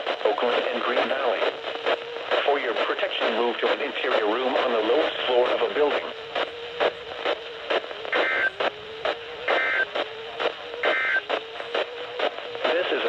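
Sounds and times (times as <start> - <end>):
crackling pops: 0.0 - 13.0
radio static: 0.0 - 13.0
steady low hum: 0.0 - 13.0
warbling digital data tones: 8.1 - 8.7, 9.5 - 10.0, 10.8 - 11.3.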